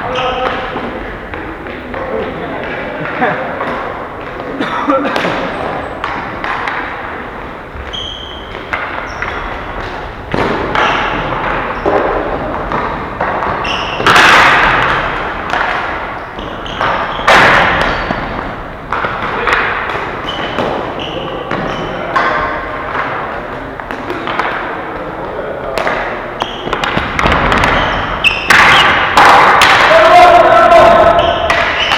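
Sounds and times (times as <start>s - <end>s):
heavy thuds against rink boards: 0.1s - 31.9s
sticks and ball knocking: 8.5s - 30.0s.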